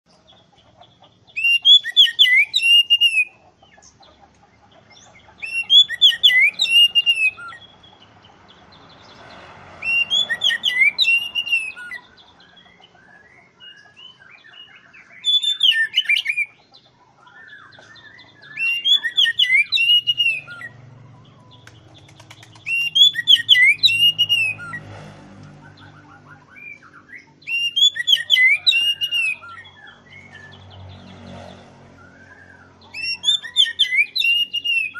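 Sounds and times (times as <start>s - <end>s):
bird singing whistled phrases: 1.4s - 3.4s, 5.4s - 7.7s, 9.8s - 12.1s, 13.1s - 16.6s, 17.3s - 20.7s, 22.6s - 24.8s, 25.8s - 29.6s, 32.1s - 34.9s.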